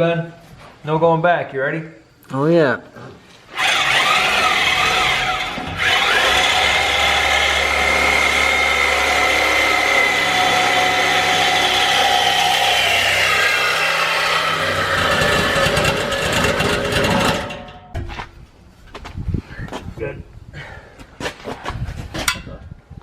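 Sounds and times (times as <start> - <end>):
power tool cutting metal pipe: 3.5 - 17.9.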